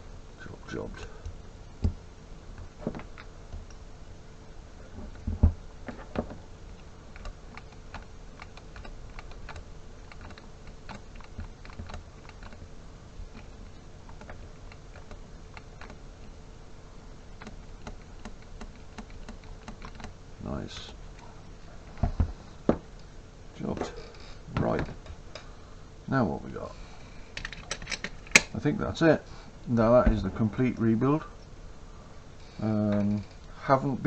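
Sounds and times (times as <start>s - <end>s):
faint steady hum: 0.0s - 34.0s
metal parts clicking and tapping: 27.4s - 28.5s.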